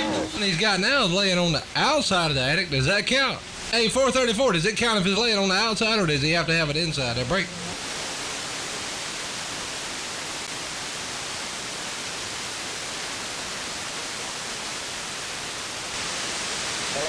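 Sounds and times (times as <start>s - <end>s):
radio static hiss: 0.0s - 17.0s.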